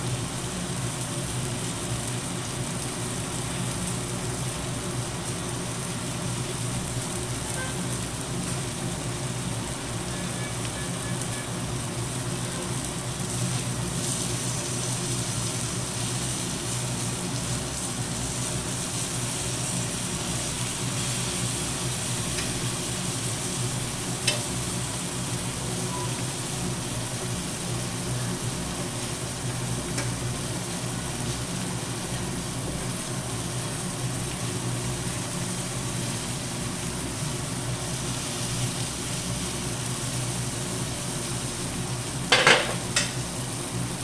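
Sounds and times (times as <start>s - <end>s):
prawns sizzling in a pan: 0.0s - 44.0s
utensil clattering on a pan: 42.3s - 43.2s.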